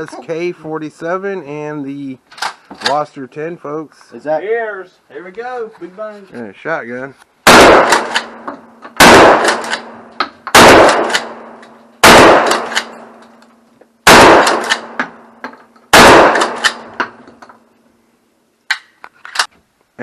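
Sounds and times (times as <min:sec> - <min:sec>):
loud gunshots with echo: 0:07.4 - 0:08.4, 0:09.0 - 0:12.9, 0:14.0 - 0:15.0, 0:15.9 - 0:17.0.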